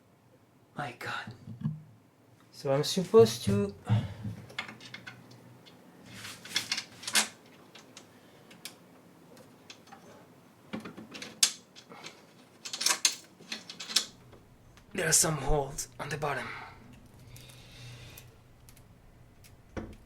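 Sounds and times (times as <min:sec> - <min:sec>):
clicks and knocks of parts fitted: 0:10.7 - 0:14.2.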